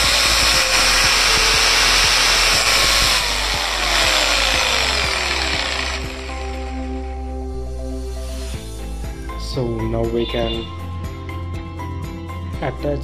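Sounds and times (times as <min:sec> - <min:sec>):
jigsaw motor whine winding down: 0:00.0 - 0:07.2.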